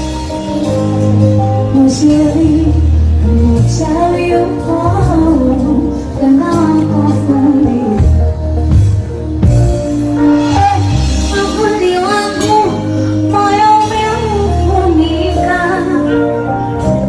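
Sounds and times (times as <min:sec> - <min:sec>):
amplified backing music: 0:00.0 - 0:17.0
woman singing: 0:01.7 - 0:08.4, 0:10.3 - 0:16.9.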